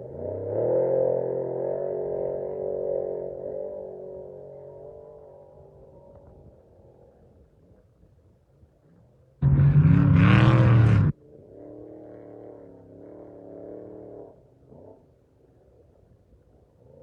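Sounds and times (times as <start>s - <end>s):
distant race engine running: 9.4s - 11.2s
race engine accelerating hard: 9.4s - 11.2s.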